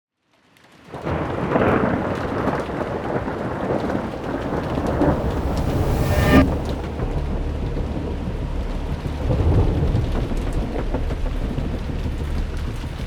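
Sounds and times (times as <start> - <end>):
steady downpour of rain: 0.3 - 5.3, 6.7 - 13.0
rolling thunder: 1.0 - 13.0
sharp thunder crash: 2.7 - 10.4.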